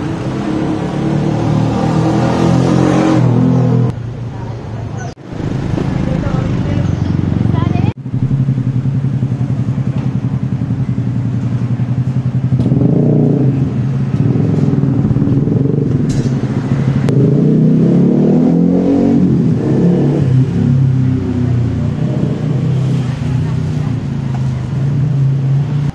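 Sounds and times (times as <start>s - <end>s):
motorbike engines running: 0.0s - 25.9s
street traffic: 0.0s - 25.9s.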